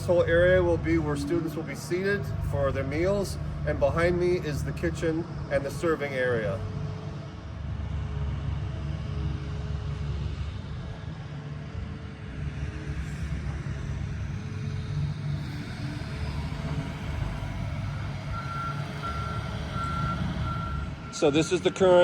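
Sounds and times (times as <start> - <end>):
heavy machinery engine rumble: 0.0 - 22.0
reversing alarm beeping: 18.3 - 22.0.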